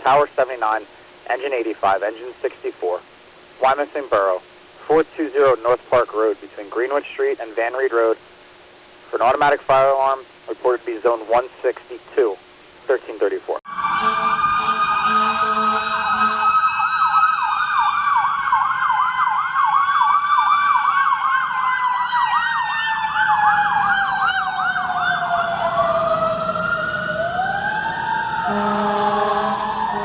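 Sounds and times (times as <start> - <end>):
wailing siren: 13.7 - 30.0
yelping siren: 13.7 - 30.0
low steady horn tone: 13.8 - 16.8, 28.4 - 30.0.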